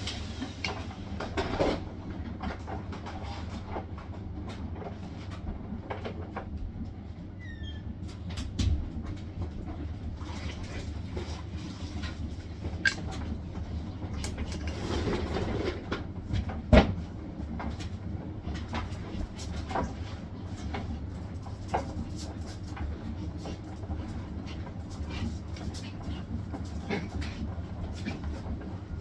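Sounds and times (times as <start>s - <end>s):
washing machine drum hum: 7.9s - 29.0s.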